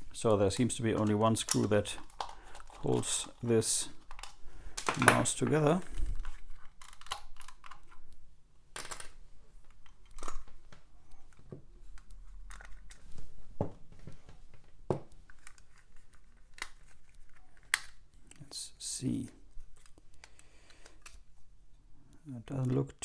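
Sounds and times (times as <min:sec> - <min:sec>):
clicks and scrapes of plastic parts: 0:00.6 - 0:08.2, 0:15.1 - 0:18.6.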